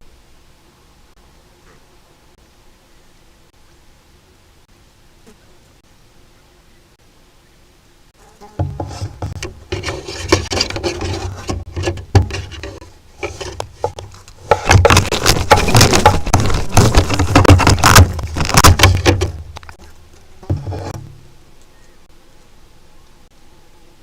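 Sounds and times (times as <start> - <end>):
beak scraping against camera: 8.7 - 21.0.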